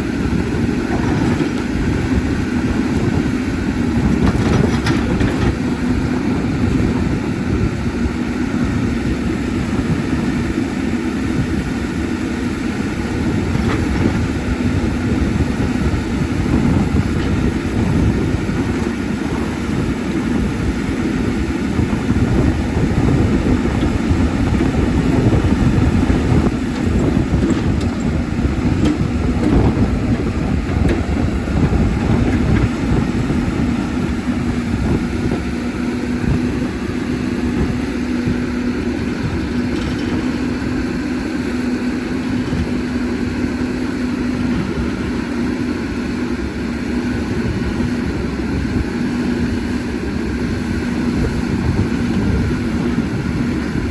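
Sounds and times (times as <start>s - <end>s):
excavator diesel engine running: 0.0s - 53.9s
faint engine knocks: 21.8s - 35.5s.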